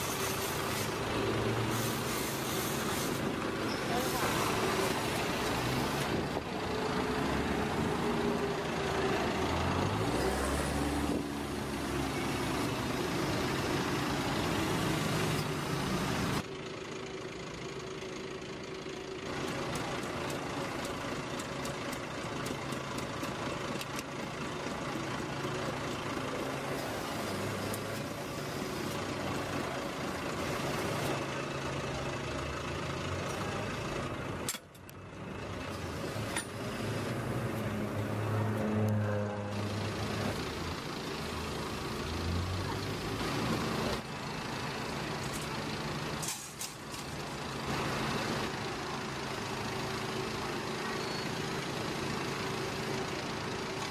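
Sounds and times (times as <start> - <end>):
heavy vehicle engines running: 0.0 - 53.9.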